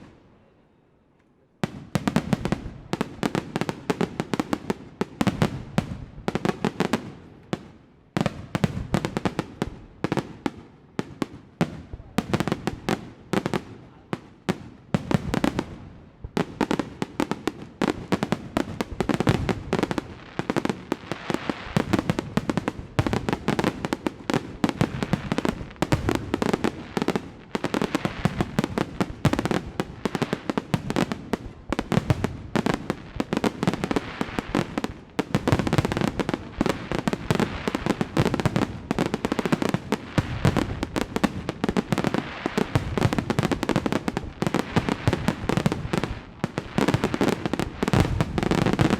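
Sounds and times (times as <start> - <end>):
fireworks bangs and crackling: 1.6 - 48.9.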